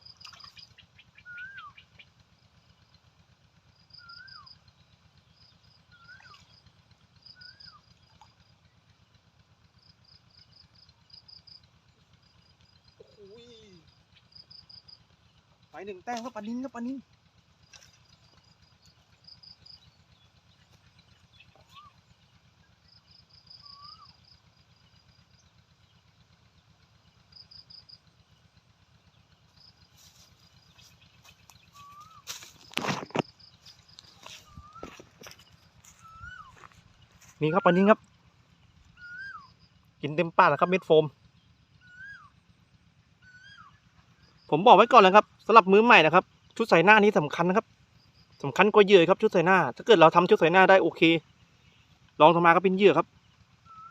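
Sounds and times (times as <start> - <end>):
upslurred bird whistle: 0.0 - 2.0, 3.9 - 4.6, 5.9 - 6.6, 7.3 - 7.9, 21.3 - 22.0, 23.5 - 24.2, 31.6 - 32.7, 33.3 - 36.7, 38.9 - 39.7, 41.8 - 42.4, 43.2 - 44.5, 53.6 - 53.9
high rapid bird chirping: 0.0 - 2.2, 3.8 - 4.7, 5.3 - 8.2, 17.6 - 24.4, 29.1 - 42.4
low steady rumble: 0.0 - 53.9
high bird chirping: 3.9 - 4.6, 20.6 - 22.0, 23.3 - 24.2, 29.5 - 38.0, 38.6 - 39.8, 53.6 - 53.9
bird whistling rising note: 34.4 - 35.0, 36.0 - 36.6.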